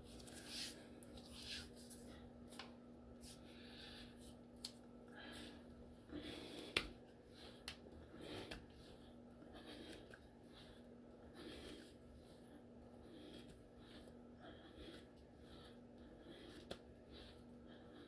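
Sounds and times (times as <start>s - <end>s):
man breathing in puffs: 5.1s - 18.0s.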